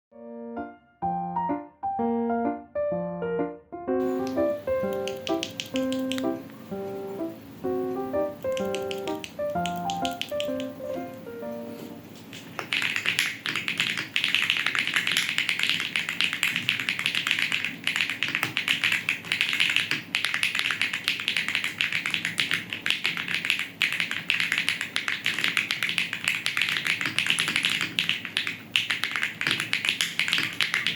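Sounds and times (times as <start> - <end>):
mechanical keyboard typing: 4.0 - 6.4, 8.2 - 11.1, 12.3 - 30.9.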